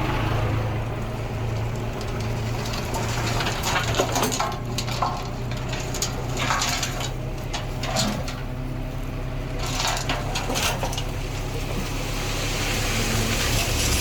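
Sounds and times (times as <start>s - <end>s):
heavy diesel engine running: 0.0s - 14.0s
soil and stones crunching: 1.0s - 14.0s.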